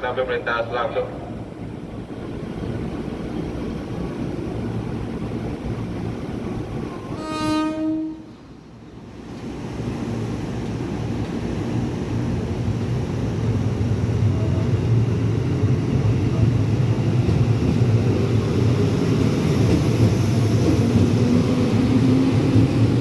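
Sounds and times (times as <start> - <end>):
train rumbling past: 0.0 - 23.0
train horn blast: 7.0 - 8.5.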